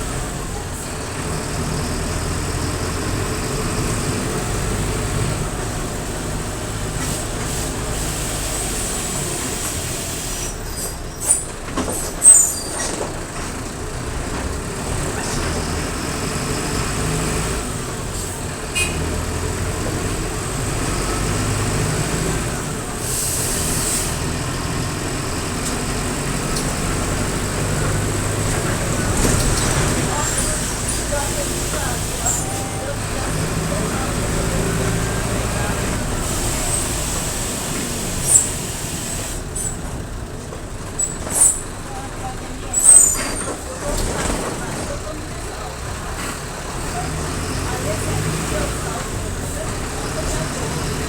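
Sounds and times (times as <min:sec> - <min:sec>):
bus diesel engine running: 0:00.0 - 0:51.0
air brake hiss: 0:23.0 - 0:24.2, 0:36.2 - 0:39.4.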